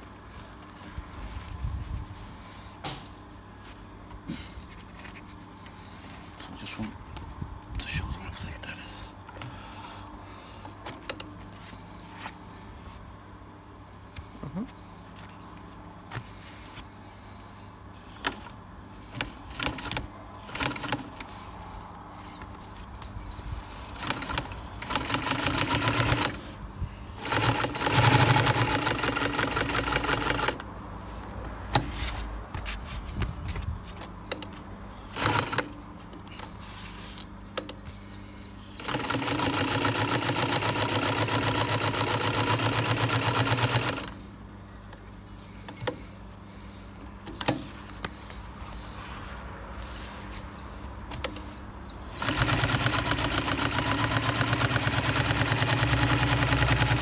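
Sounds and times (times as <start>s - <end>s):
sewing machine stitching leather: 19.1s - 21.3s, 23.9s - 26.5s, 27.2s - 30.6s, 35.2s - 35.8s, 38.8s - 44.2s, 52.2s - 57.0s.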